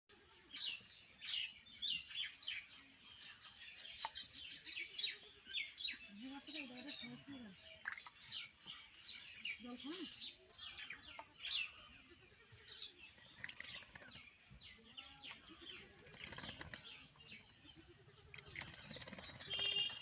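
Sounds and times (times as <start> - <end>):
bird chirps: 0.4 - 20.0
bird wings fluttering: 18.5 - 20.0.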